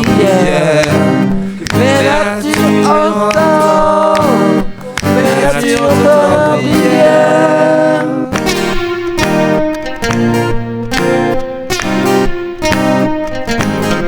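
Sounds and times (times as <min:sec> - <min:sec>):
person singing long held notes: 0:00.0 - 0:08.8
guitar accompaniment: 0:00.0 - 0:14.0.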